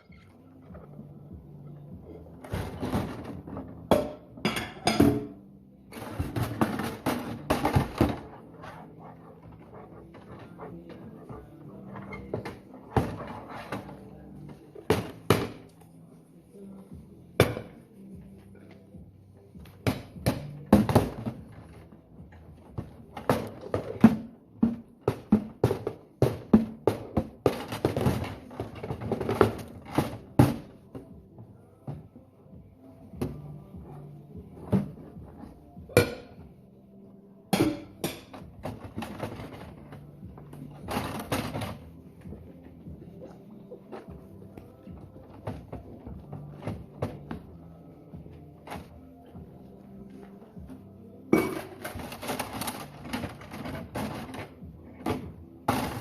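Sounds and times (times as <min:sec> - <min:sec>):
dishes clattering: 0:03.9 - 0:05.4, 0:51.3 - 0:54.2.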